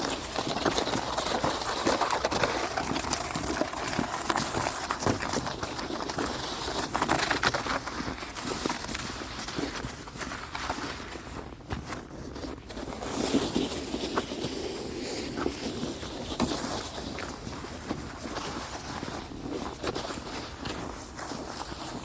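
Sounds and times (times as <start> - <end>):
footsteps in snow: 0.0 - 22.0.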